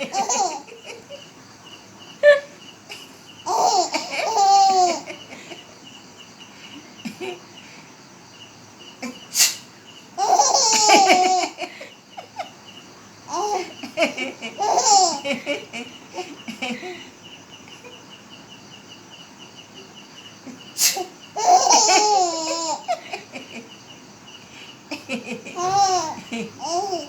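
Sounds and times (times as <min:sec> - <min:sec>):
baby laughing: 0:00.0 - 0:01.2, 0:02.2 - 0:05.7, 0:10.2 - 0:12.5, 0:13.3 - 0:16.5, 0:21.0 - 0:23.6, 0:24.9 - 0:27.0.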